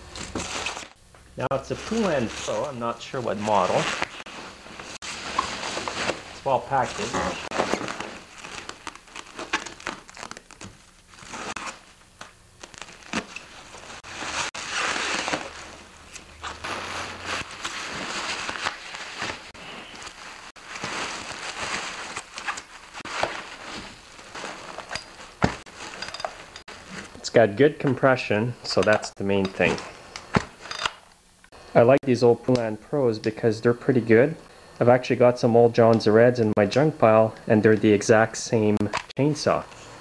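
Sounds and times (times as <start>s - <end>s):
packing material crumpling: 1.5s - 26.6s
tearing-like rustle: 12.6s - 25.9s.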